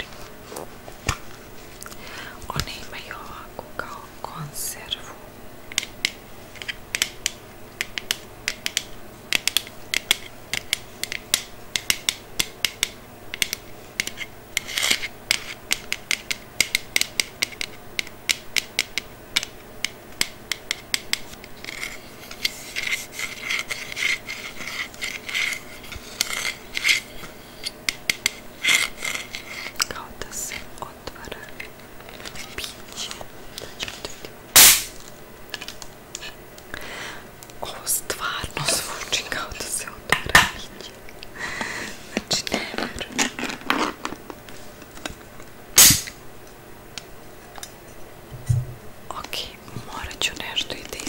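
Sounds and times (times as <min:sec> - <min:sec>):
tapping and scratching on object: 0:05.7 - 0:33.2.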